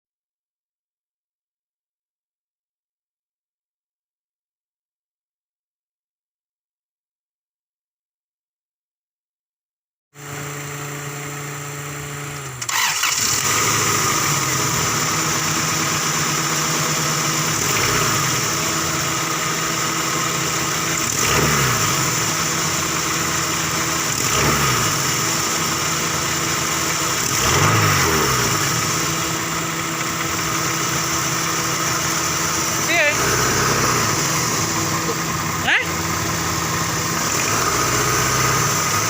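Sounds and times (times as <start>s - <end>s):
car engine idling and revving: 10.2s - 39.0s
car engine cranking: 12.2s - 39.0s.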